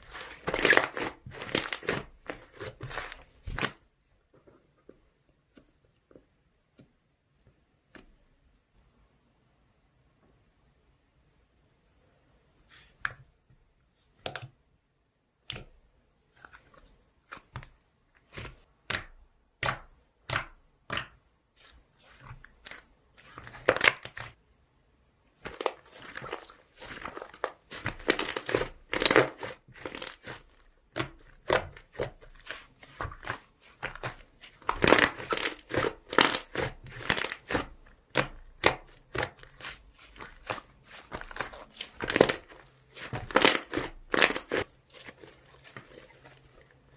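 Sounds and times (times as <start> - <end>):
slime popping and crackling: 0.0 - 3.7, 22.2 - 24.4, 25.4 - 46.2.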